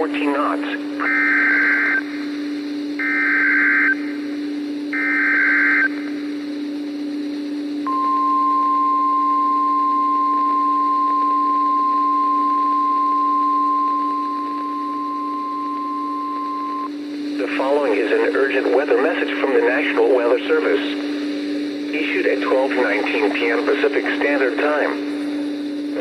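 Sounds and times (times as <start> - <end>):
screeching data bursts: 0.0 - 6.4, 7.8 - 26.0
steady low hum: 0.0 - 26.0.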